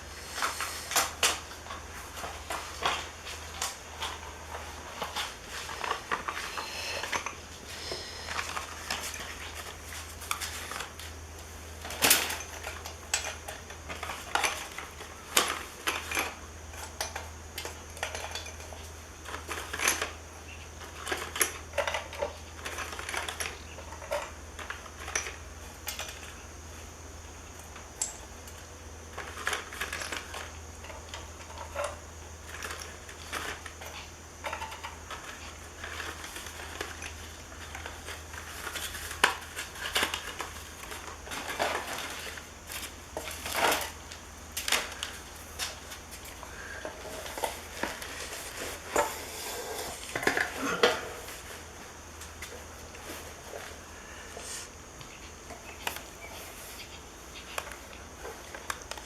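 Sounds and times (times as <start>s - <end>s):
steady low hum: 0.0s - 59.0s
small hard parts clinking: 11.8s - 20.2s.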